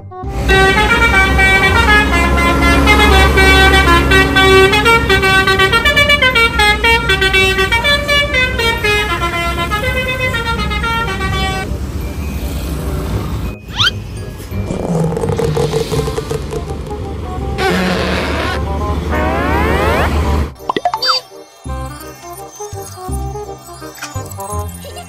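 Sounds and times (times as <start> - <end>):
multi-tone bus horn melody: 0.0 - 11.7, 14.8 - 20.5
engine rumble: 11.6 - 20.6.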